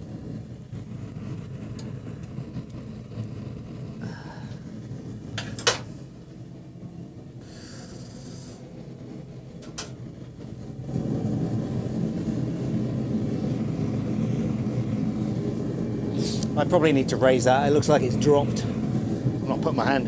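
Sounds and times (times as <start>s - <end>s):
gas torch flame burning: 0.0s - 20.0s.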